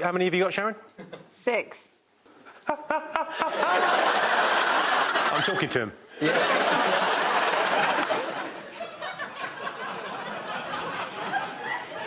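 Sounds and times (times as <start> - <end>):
studio audience laughing: 2.6 - 12.0.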